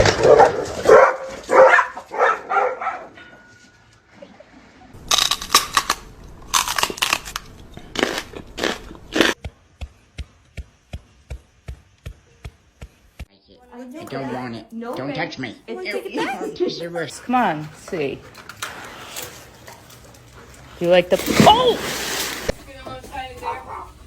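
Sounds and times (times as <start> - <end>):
dog barking: 0.0 - 3.2, 23.4 - 24.0.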